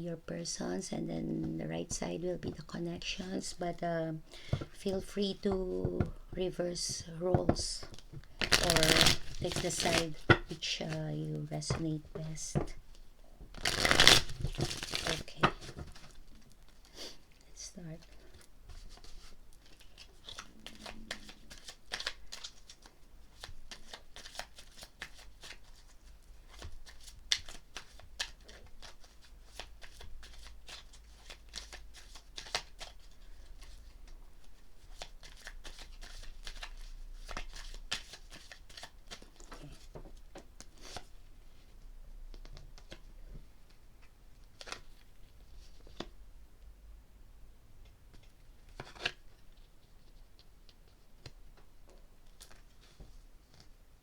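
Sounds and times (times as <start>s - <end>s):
cards being shuffled: 4.4s - 12.8s, 13.6s - 16.2s, 18.0s - 34.2s, 34.8s - 40.0s.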